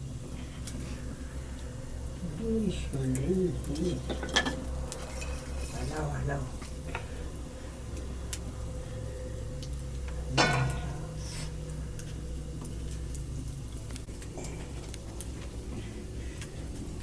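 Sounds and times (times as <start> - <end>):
steady low rumble: 0.0 - 17.0
metal cookware clanking: 3.8 - 5.8, 10.3 - 11.2.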